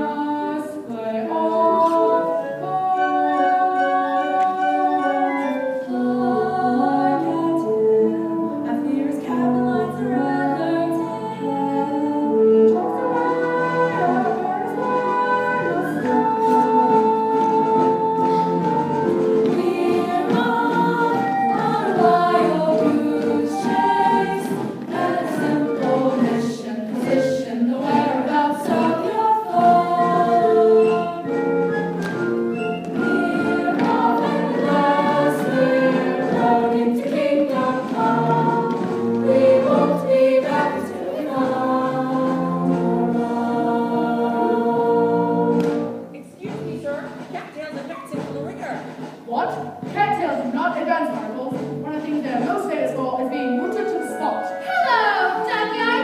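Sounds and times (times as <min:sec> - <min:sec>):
instrumental accompaniment: 0:00.0 - 0:56.0
cast singing in chorus: 0:32.9 - 0:45.9.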